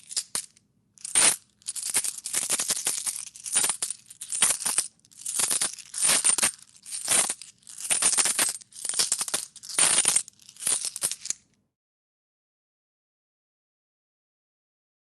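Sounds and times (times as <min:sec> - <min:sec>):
coins jingling in a hand: 0:00.0 - 0:11.4.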